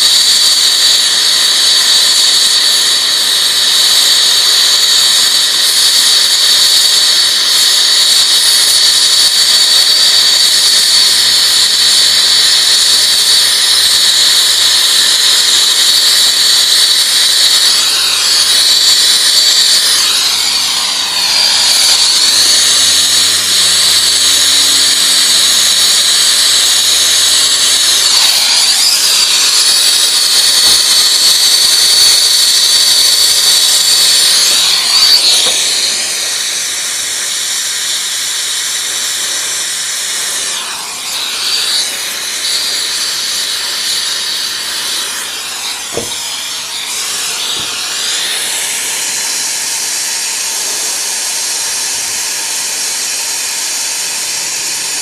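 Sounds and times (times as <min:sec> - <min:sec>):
torch flame hissing: 0:00.0 - 0:55.0.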